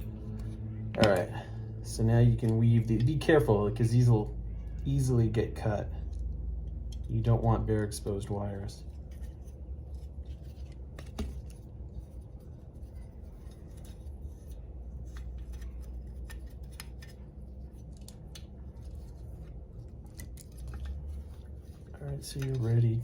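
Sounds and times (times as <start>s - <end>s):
steady low hum: 0.0s - 23.0s
wiring clicks and rubbing: 6.0s - 23.0s.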